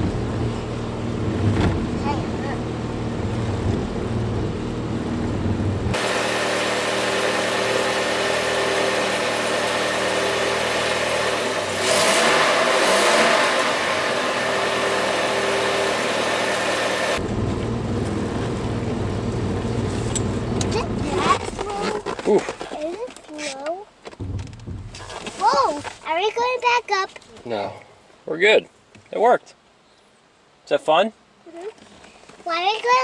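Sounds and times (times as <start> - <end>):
car engine revving: 5.9 - 17.2.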